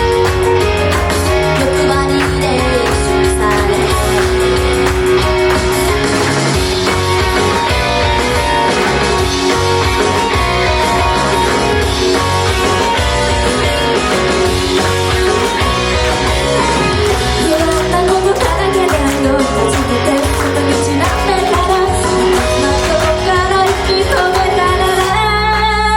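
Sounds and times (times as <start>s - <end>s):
live rock music: 0.0s - 25.9s
person singing: 0.9s - 4.6s, 16.6s - 25.9s.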